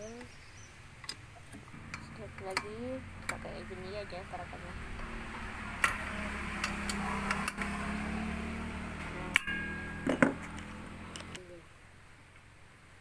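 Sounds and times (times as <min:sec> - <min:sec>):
steady hum: 0:00.8 - 0:13.0
short metallic ring: 0:09.4 - 0:10.6.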